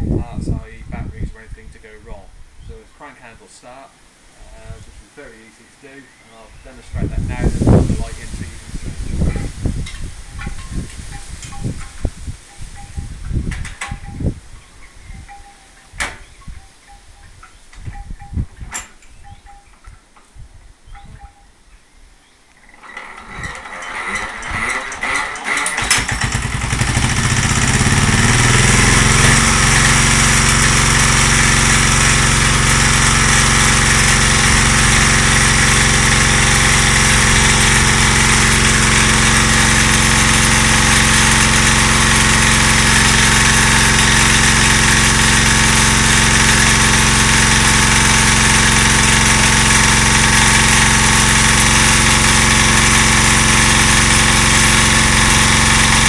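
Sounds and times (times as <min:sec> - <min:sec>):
diesel generator engine: 0:22.6 - 0:56.0.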